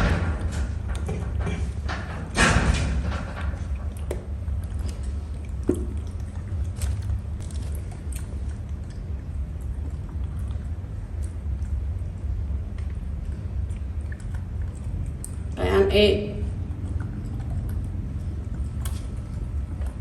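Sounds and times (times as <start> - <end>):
steady low hum: 0.0 - 20.0
monkey chewing: 3.5 - 15.6, 16.4 - 20.0.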